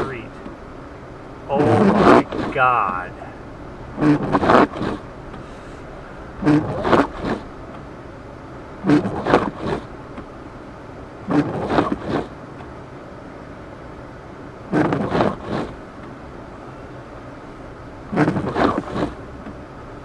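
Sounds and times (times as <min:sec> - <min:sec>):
engine and road noise hum: 0:00.0 - 0:20.0
windshield wipers scraping snow: 0:01.5 - 0:03.0, 0:03.9 - 0:07.9, 0:08.8 - 0:09.9, 0:11.3 - 0:12.4, 0:14.7 - 0:15.8, 0:18.2 - 0:19.2.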